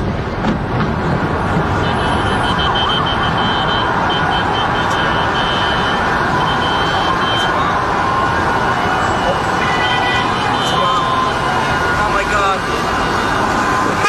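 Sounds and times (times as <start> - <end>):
emergency sirens: 0.0 - 14.0
street noise: 0.0 - 14.0
pulsing high alarm tone: 1.8 - 7.6
car alarm: 1.8 - 7.8, 9.0 - 11.8.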